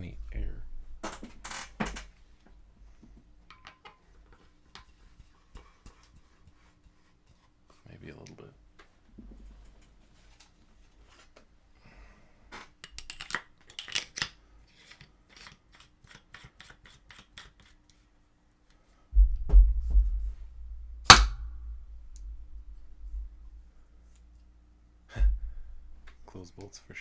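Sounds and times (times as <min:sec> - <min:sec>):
low handling bumps: 0:19.2 - 0:23.6, 0:25.2 - 0:26.2
paintball marker firing pop: 0:21.1 - 0:21.5.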